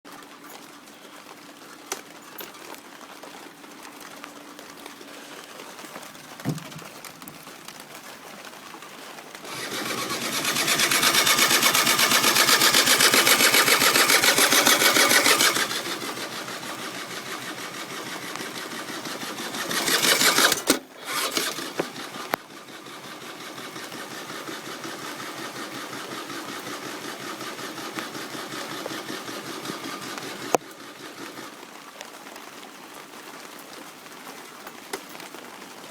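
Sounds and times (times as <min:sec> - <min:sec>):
starter motor cranking engine: 0:05.9 - 0:07.8, 0:09.4 - 0:31.8
steady mechanical whirr: 0:09.4 - 0:31.6.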